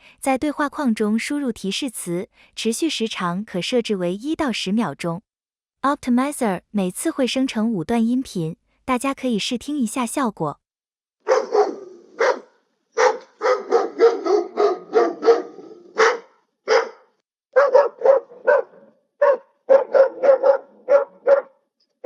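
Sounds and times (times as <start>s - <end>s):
dog barking: 11.2s - 21.6s.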